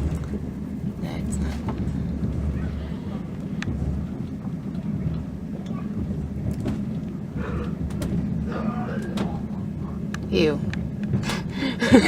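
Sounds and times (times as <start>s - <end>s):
vehicle rumble from inside: 0.0s - 12.0s.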